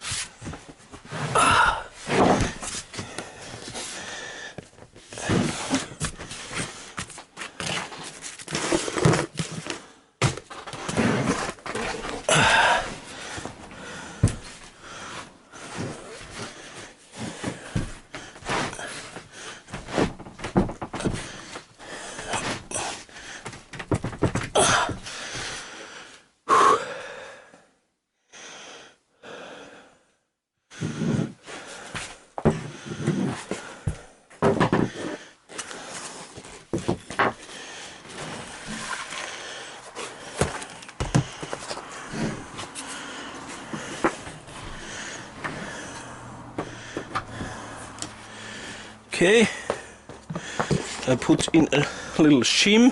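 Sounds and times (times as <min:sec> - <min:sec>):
heavy gasping breathing: 0:01.2 - 0:07.1, 0:11.8 - 0:20.0, 0:20.6 - 0:23.6, 0:24.6 - 0:27.8, 0:28.4 - 0:52.4
knocks and scrapes of board panels: 0:17.3 - 0:22.8, 0:32.0 - 0:35.2.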